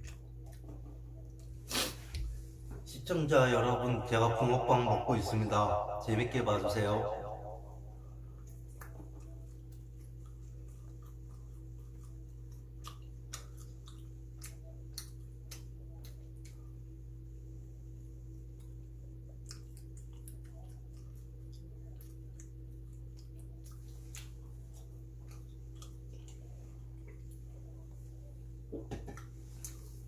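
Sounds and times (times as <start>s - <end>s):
mouth clicks and smacks chewing: 0.0s - 1.8s, 8.4s - 16.8s, 18.5s - 27.6s
low electrical hum: 0.0s - 30.0s.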